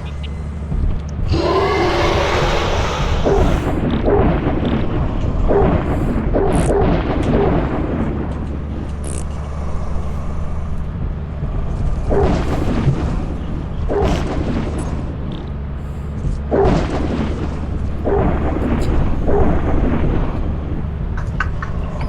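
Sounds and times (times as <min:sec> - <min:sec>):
steady low rumble: 0:00.0 - 0:22.0
short loud bursts: 0:01.2 - 0:10.9.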